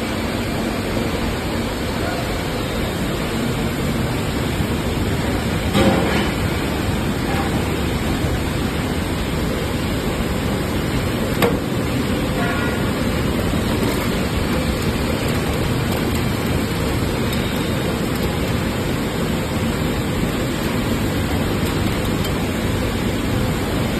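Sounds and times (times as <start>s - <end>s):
hydraulic baling press running: 5.4s - 23.9s.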